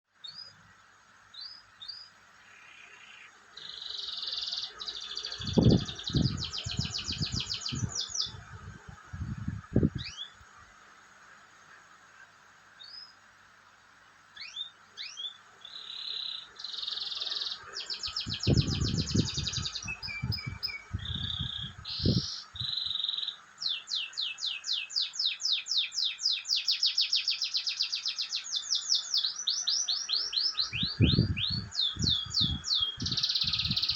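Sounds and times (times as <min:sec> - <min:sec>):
canary singing: 0:01.4 - 0:08.4, 0:14.4 - 0:33.9.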